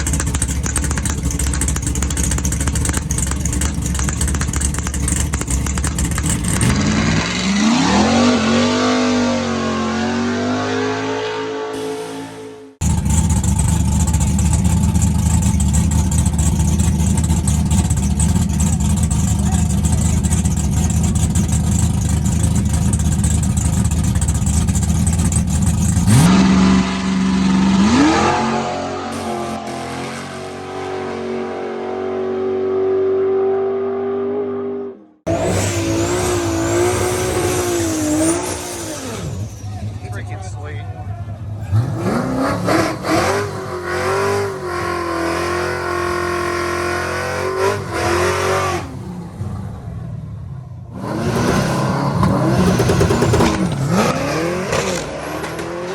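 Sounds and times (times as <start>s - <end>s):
car engine at full throttle: 0.0s - 55.9s
engine with wavering pitch: 0.0s - 55.9s
high whine: 11.6s - 16.1s, 26.3s - 31.1s.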